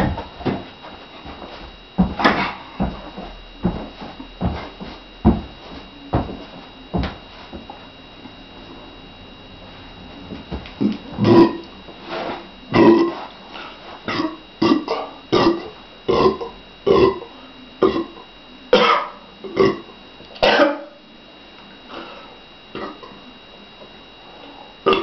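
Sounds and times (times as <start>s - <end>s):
woman burping: 10.8s - 11.7s, 12.7s - 13.2s, 14.1s - 20.9s, 22.8s - 23.1s.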